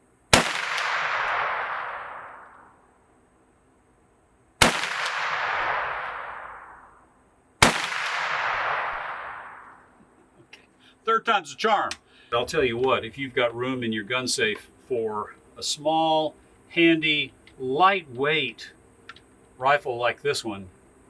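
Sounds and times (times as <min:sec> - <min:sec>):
rifle shots with echo: 0:00.3 - 0:02.8, 0:04.6 - 0:07.0, 0:07.6 - 0:09.8.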